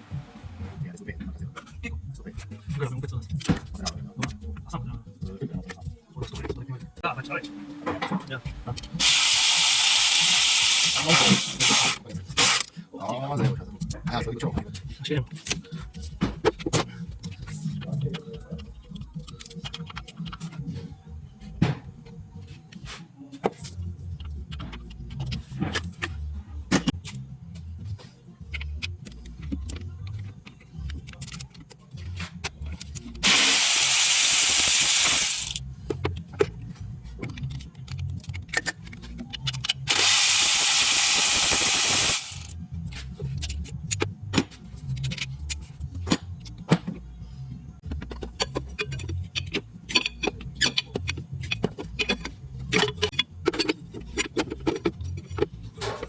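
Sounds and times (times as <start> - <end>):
power tool hissing: 9.0 - 12.6, 33.2 - 35.6, 39.9 - 42.5
metal tools clinking: 33.2 - 35.6.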